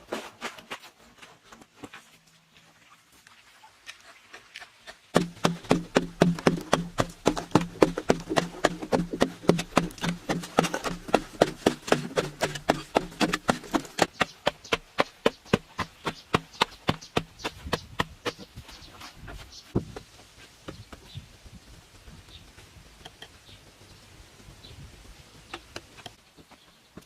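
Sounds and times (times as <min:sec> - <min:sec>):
rapid regular knocking: 0:05.2 - 0:18.5.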